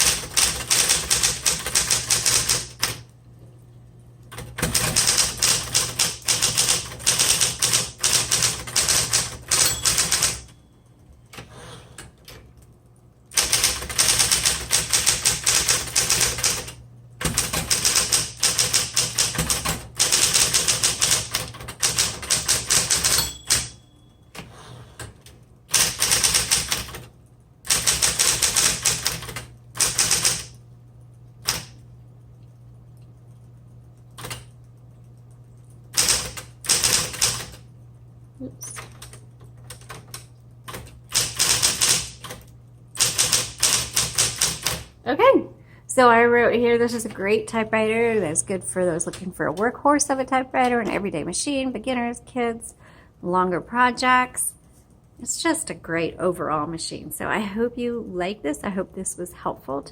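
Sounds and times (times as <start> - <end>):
electric typewriter key strikes: 0.0 - 3.1, 4.3 - 10.6, 13.3 - 27.1, 27.7 - 30.6, 31.4 - 31.8, 34.1 - 34.6, 35.9 - 37.7, 38.7 - 44.9
typewriter motor humming: 0.0 - 3.1, 4.2 - 10.6, 13.3 - 30.6, 31.4 - 31.9, 33.2 - 34.6, 35.2 - 37.8, 38.6 - 45.0.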